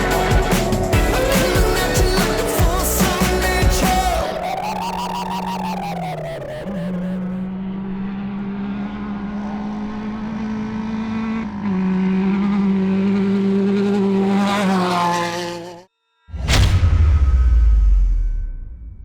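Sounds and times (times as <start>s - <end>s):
race car engine running: 0.0s - 15.7s
whoosh: 16.3s - 19.0s.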